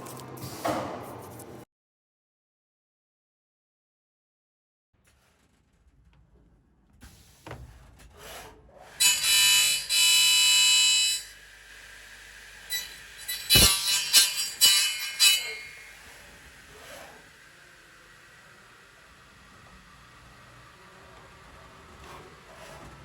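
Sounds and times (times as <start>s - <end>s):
sharp clanks and knocks: 13.3s - 15.8s.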